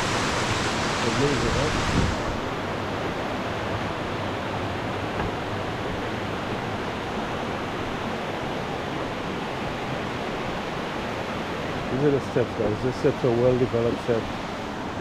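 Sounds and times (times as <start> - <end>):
waterfall rushing: 0.0 - 5.7.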